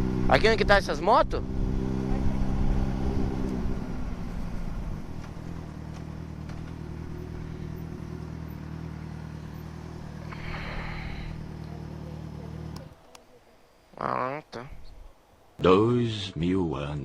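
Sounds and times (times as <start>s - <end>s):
motorcycle engine idling: 1.5s - 13.0s.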